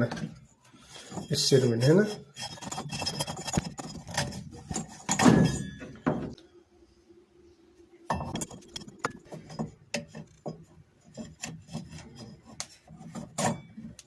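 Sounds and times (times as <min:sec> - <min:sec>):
rubber belt rubbing and scraping: 0:00.8 - 0:05.2, 0:08.4 - 0:14.0.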